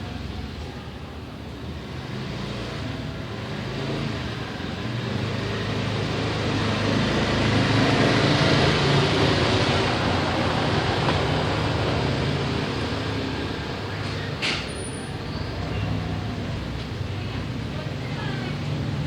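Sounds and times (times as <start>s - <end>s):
vehicle engine approaching: 1.6s - 14.4s.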